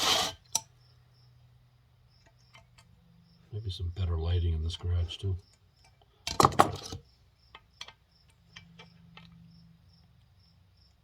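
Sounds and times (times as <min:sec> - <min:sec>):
cricket chirping: 0:00.2 - 0:11.0
clatter of hard knocks: 0:06.3 - 0:07.0.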